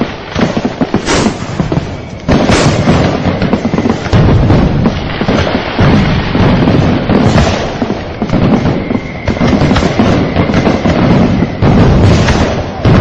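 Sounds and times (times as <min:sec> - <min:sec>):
firework booms: 0:00.0 - 0:13.0
fireworks crackling and popping: 0:00.0 - 0:13.0.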